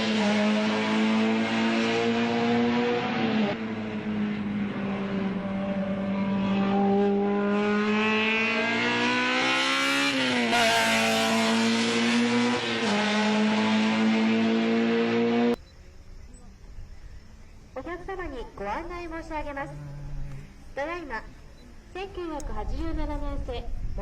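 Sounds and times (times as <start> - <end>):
racing car engine at high revs: 0.0 - 15.6.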